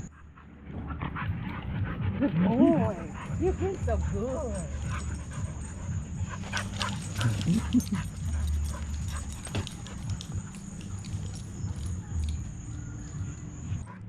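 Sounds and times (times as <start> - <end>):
dogs barking and whimpering: 0.0 - 14.0
steady low rumble: 0.0 - 14.0.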